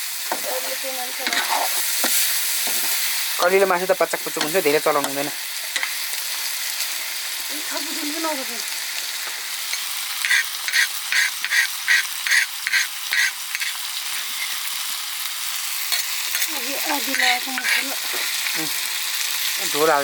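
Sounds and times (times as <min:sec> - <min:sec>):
curry sizzling in a pan: 0:00.0 - 0:20.0
spoon scraping pan: 0:00.3 - 0:03.4, 0:09.2 - 0:14.7, 0:15.9 - 0:18.6.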